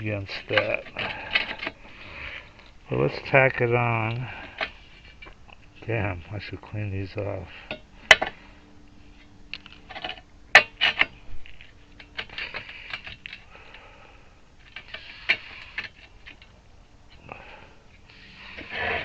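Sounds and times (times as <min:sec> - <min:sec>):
metal scraping: 0:00.0 - 0:06.1, 0:07.2 - 0:17.2, 0:17.9 - 0:19.0
metal parts clinking: 0:00.3 - 0:01.8, 0:09.5 - 0:13.5, 0:14.6 - 0:16.6.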